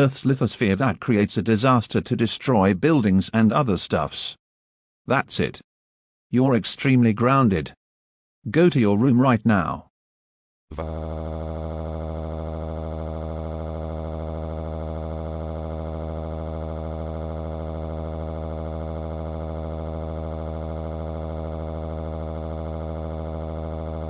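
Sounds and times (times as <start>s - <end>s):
low electronic drone: 10.7s - 24.0s.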